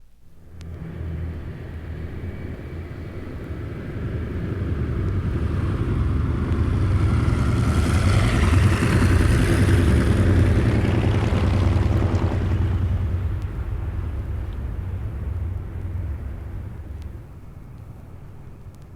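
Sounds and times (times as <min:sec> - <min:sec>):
propeller plane engine droning: 0:00.2 - 0:18.9.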